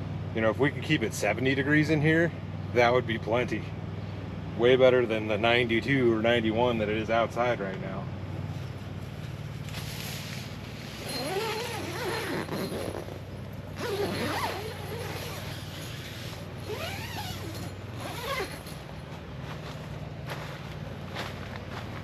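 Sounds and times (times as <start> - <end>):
squeaky creaking: 11.0 - 18.8.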